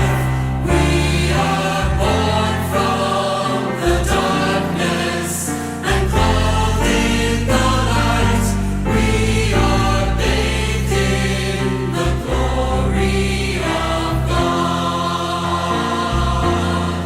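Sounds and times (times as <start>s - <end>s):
held bass notes: 0.0s - 2.6s
choir singing worship song: 0.0s - 17.0s.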